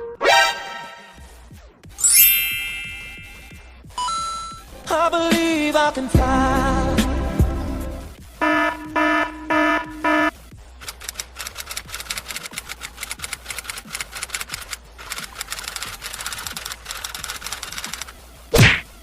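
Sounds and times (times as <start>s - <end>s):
short electronic beeps: 2.0s - 4.6s, 8.4s - 10.3s
fast irregular clicking: 10.8s - 18.2s.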